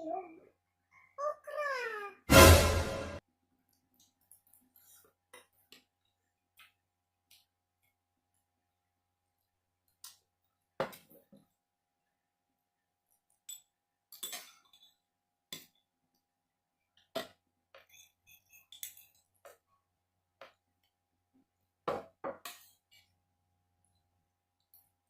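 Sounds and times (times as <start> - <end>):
cutlery clinking on plate and bowl: 13.4 - 15.0, 17.8 - 19.4.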